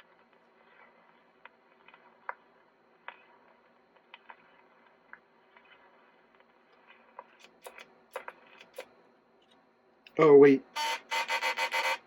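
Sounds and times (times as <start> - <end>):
low steady hum: 0.0 - 11.1.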